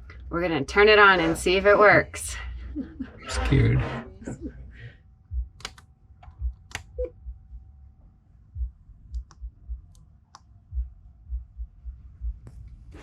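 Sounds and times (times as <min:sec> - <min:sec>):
dull low knocks: 0:05.3 - 0:05.6, 0:08.4 - 0:09.9, 0:10.6 - 0:13.0
switches and buttons clicking: 0:05.6 - 0:07.2, 0:09.1 - 0:10.6.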